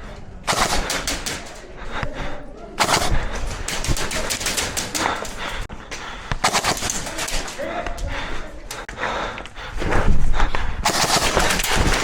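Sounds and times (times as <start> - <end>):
airsoft guns firing rapid bursts: 0.5 - 1.6, 2.8 - 5.4, 6.4 - 7.6, 10.8 - 12.0.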